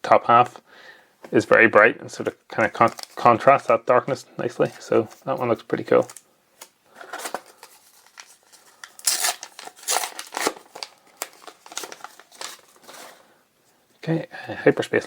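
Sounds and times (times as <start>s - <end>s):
plastic wrapper crinkling and tearing: 2.6s - 3.6s, 5.8s - 13.2s.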